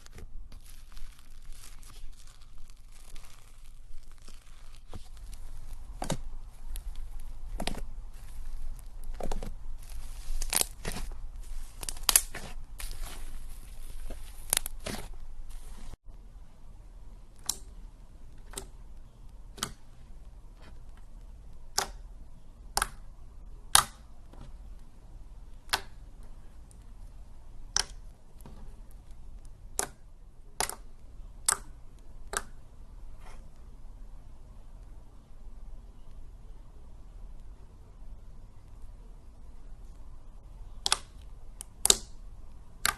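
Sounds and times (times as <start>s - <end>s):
slime crackling and popping: 0.0s - 16.0s.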